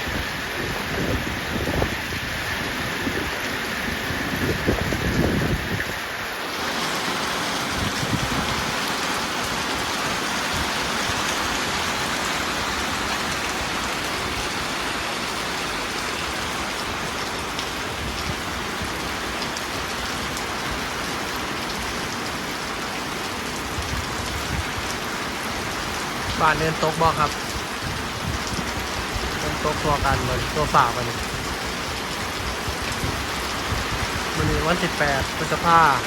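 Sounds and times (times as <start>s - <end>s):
heavy rain falling: 0.0s - 36.0s.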